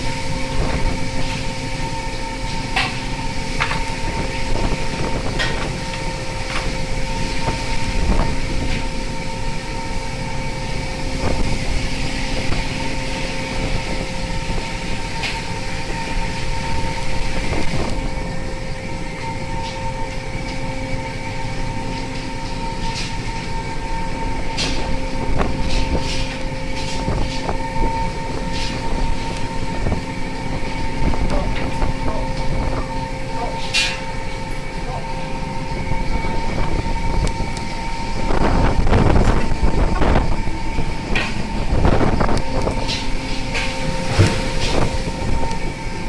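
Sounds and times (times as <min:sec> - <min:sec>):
boat engine and deck machinery drone: 0:00.0 - 0:46.0.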